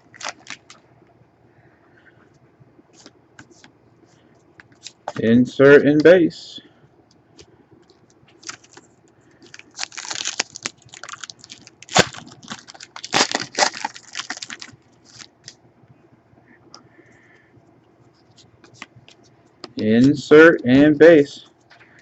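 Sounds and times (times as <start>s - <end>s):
foil wrapper crinkling and tearing: 0.0s - 0.8s, 8.4s - 8.8s, 9.4s - 15.6s.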